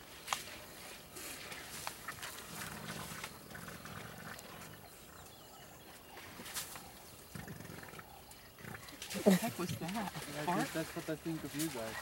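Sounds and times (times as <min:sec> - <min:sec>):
elephant low rumbling: 0:02.2 - 0:05.6.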